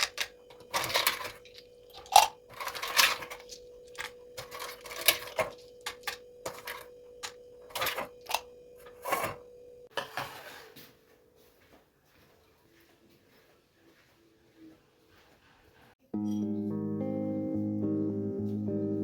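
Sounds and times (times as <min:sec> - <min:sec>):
small objects clicking and clattering: 0:00.0 - 0:06.9
faint steady hum: 0:00.0 - 0:09.9.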